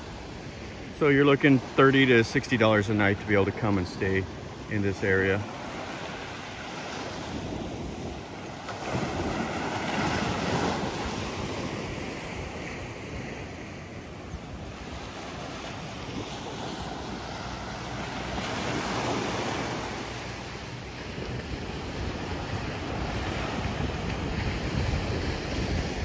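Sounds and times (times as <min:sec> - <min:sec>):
surf washing onto beach: 0:00.0 - 0:26.0
wind on microphone: 0:06.1 - 0:26.0.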